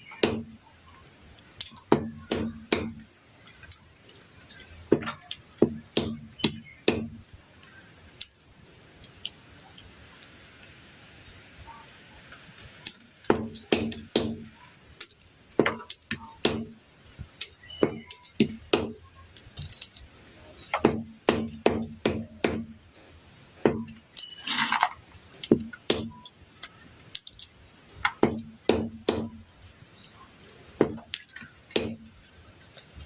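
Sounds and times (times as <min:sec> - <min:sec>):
knife chopping olives: 0:00.0 - 0:00.6, 0:01.6 - 0:03.1, 0:04.9 - 0:07.2, 0:12.9 - 0:16.8, 0:17.4 - 0:19.9, 0:20.6 - 0:22.8, 0:23.6 - 0:26.2, 0:28.0 - 0:29.8, 0:30.8 - 0:32.2.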